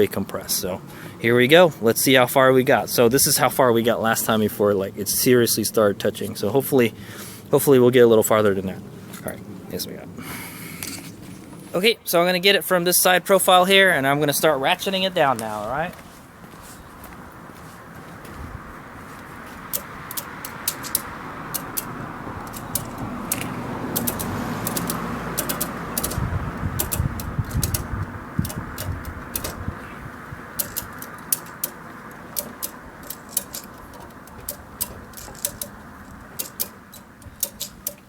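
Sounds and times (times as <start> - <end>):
steady rushing noise: 0.0 - 38.0
ratchet strap clicking: 19.6 - 29.8, 30.5 - 38.0.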